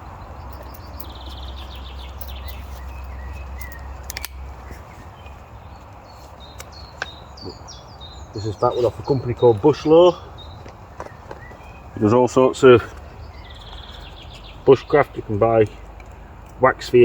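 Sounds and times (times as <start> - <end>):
birds chirping: 0.0 - 17.0
sharp clicks: 2.1 - 4.4.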